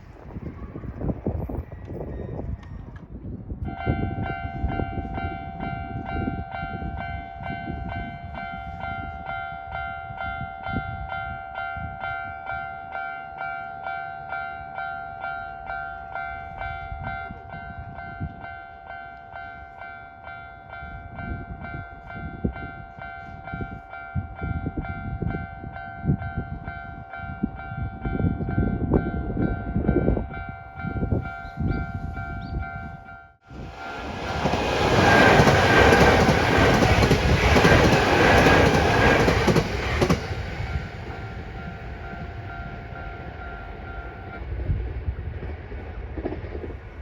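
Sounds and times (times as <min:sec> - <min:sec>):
level-crossing warning bell: 0:03.7 - 0:44.5
train rumbling over rails: 0:33.4 - 0:47.0.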